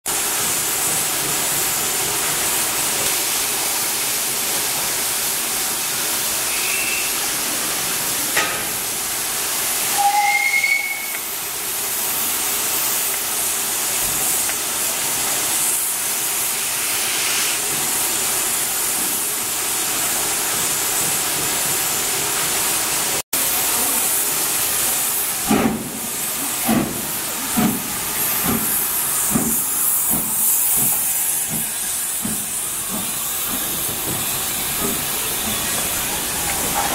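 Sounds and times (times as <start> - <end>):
steam hissing: 0.1 - 36.9
steam locomotive whistle: 6.4 - 7.3, 9.8 - 11.4
locomotive puffing beats: 25.3 - 36.9.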